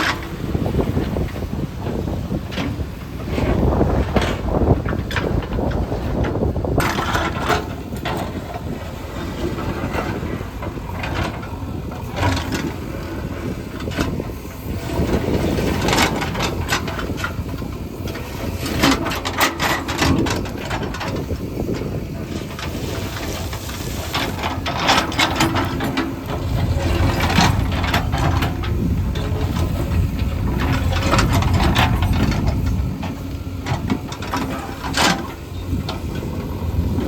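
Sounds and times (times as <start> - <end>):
diesel engine running: 0.0 - 37.0
sharp clatters and knocks: 0.0 - 37.0.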